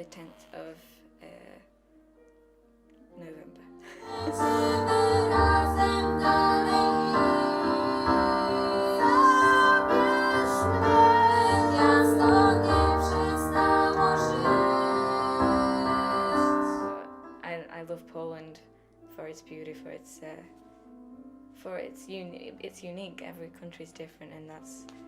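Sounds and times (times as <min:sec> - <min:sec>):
keyboard chords: 0:00.0 - 0:18.4
woman singing: 0:03.3 - 0:17.0.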